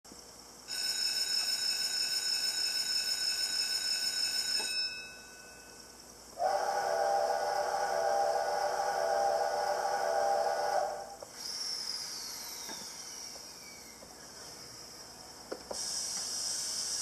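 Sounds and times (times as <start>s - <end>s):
steam locomotive whistle: 6.4s - 11.2s.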